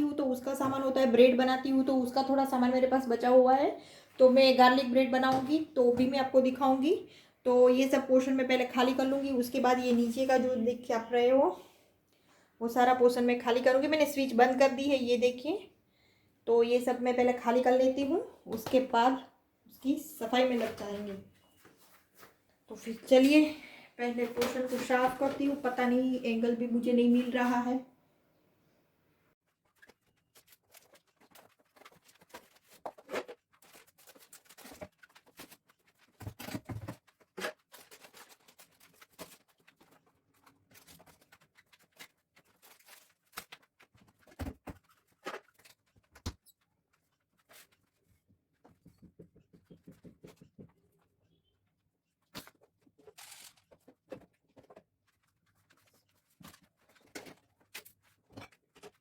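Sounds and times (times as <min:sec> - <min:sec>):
plastic bags rustling: 0:29.6 - 0:46.1.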